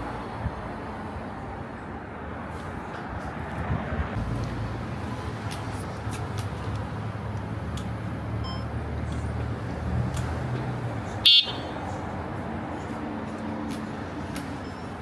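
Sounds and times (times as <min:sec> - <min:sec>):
low rumble of vehicles: 0:00.0 - 0:15.0
high-pitched electronic beep: 0:08.4 - 0:08.7.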